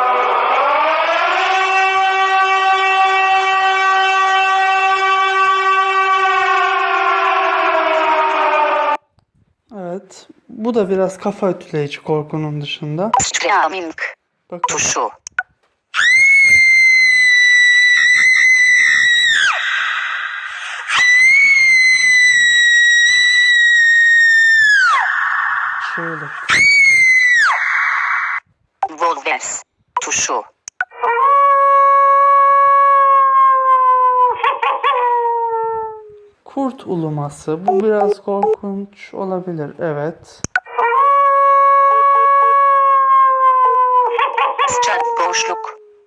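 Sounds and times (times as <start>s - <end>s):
wailing siren-like horn: 0.0s - 9.0s
shrill high-pitched scream: 0.0s - 9.1s, 15.9s - 28.5s, 30.9s - 35.9s, 40.6s - 45.8s.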